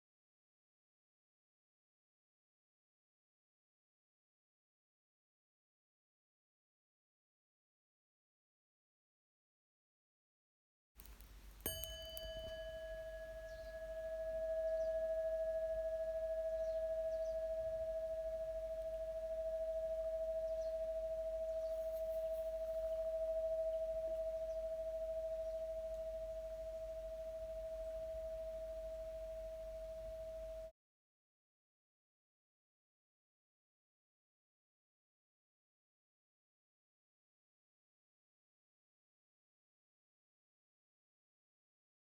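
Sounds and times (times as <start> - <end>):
metal singing bowl ringing: 11.6 - 30.7.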